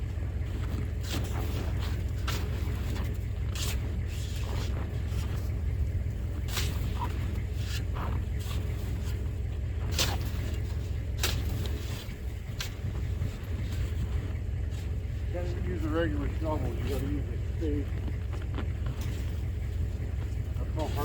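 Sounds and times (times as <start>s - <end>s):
spade chopping into hard snow: 11.2s - 12.0s.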